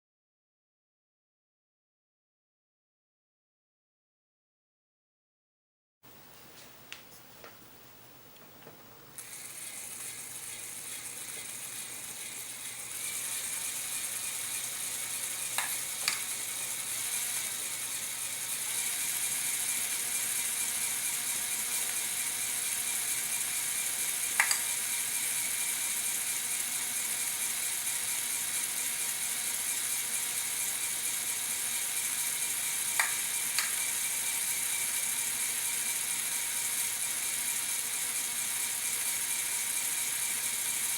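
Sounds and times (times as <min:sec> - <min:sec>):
electric motors whirring: 0:09.2 - 0:40.9
sharp click: 0:24.4 - 0:24.7, 0:33.0 - 0:33.8.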